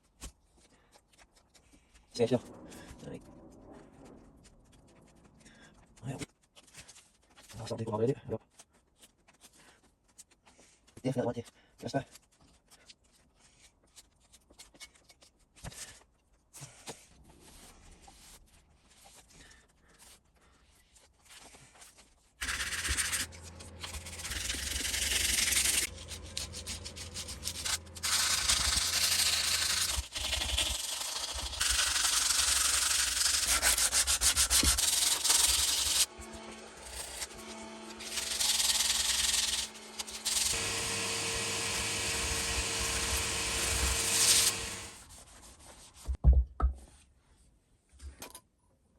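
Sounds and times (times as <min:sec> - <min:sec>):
sanding metal: 0:22.4 - 0:45.8.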